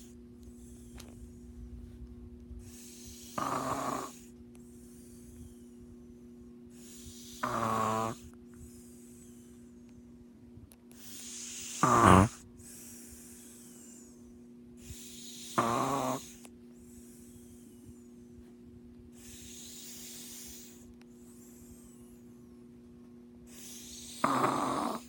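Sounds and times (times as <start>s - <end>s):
low electrical hum: 0.0s - 25.0s
nasal snorting snores: 2.6s - 5.4s, 6.8s - 8.4s, 11.0s - 14.0s, 14.8s - 16.5s, 19.2s - 20.9s, 23.5s - 25.0s
hissing breath: 2.6s - 22.5s, 23.5s - 25.0s
breath hiss with thin whistle: 11.0s - 14.2s, 19.2s - 22.3s, 23.5s - 25.0s.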